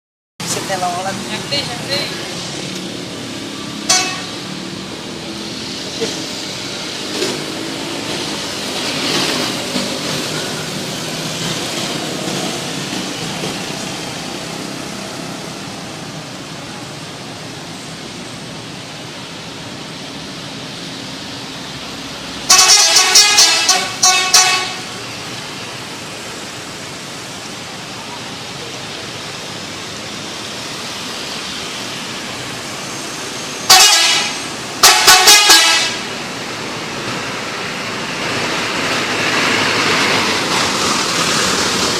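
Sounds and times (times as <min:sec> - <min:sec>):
street noise: 0:00.4 - 0:41.9
musical bus horn: 0:03.9 - 0:04.5, 0:22.4 - 0:25.0, 0:33.7 - 0:36.1.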